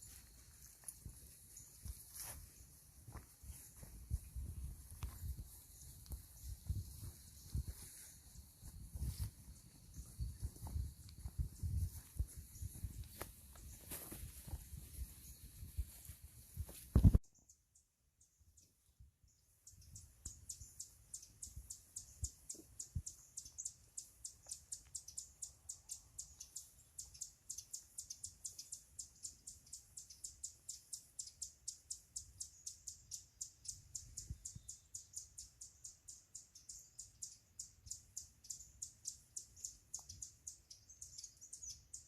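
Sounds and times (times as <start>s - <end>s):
songbirds chirping: 0.0s - 42.0s
soft low thumps: 3.1s - 17.2s.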